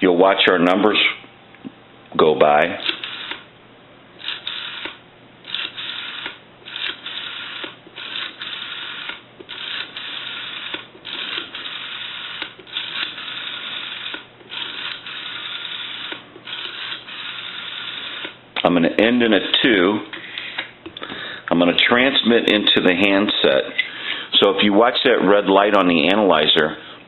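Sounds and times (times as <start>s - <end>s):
rotary telephone dial whirring and clicking: 2.8s - 3.4s, 4.2s - 18.4s.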